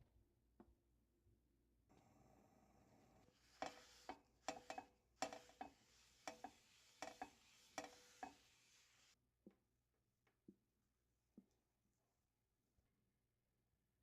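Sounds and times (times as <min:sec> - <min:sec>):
utensil clinking against bowl: 0:03.6 - 0:08.5.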